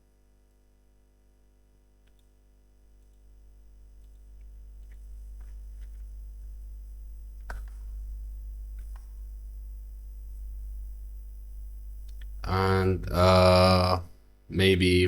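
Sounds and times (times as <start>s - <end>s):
low steady hum: 0.0s - 15.0s
faint clicks: 4.0s - 10.6s, 11.9s - 12.5s.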